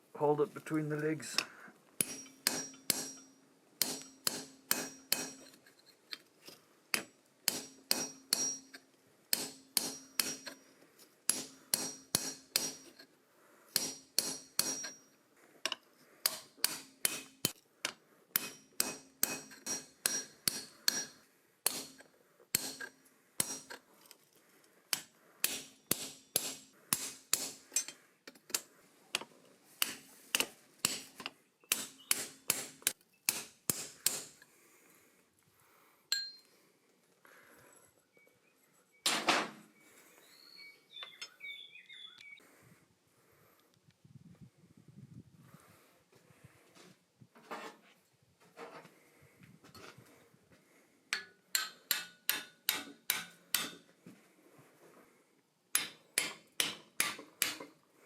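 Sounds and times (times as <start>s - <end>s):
hammer striking steel on anvil: 2.0s - 5.6s, 6.9s - 10.6s, 11.3s - 13.0s, 13.8s - 15.1s, 16.2s - 17.6s, 18.4s - 23.8s, 24.9s - 28.0s, 31.7s - 34.3s, 51.1s - 53.8s, 55.7s - 57.7s.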